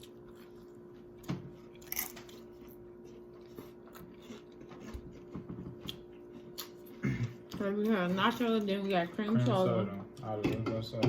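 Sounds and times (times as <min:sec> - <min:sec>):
chewing crunchy chips: 0:00.0 - 0:08.0.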